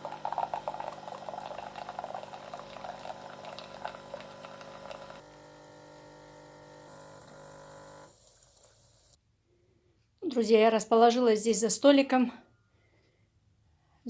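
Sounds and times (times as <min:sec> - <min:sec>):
water boiling and bubbling: 0:00.0 - 0:07.8.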